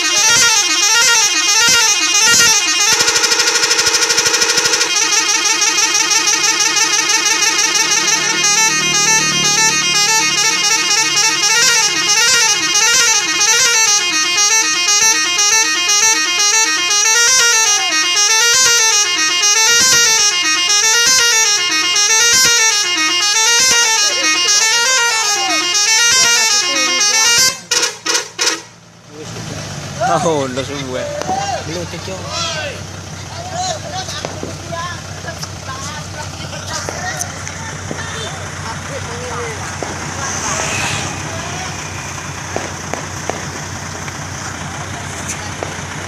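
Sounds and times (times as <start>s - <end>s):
musical air horn warbling tune: 0.0s - 28.8s, 38.4s - 43.0s.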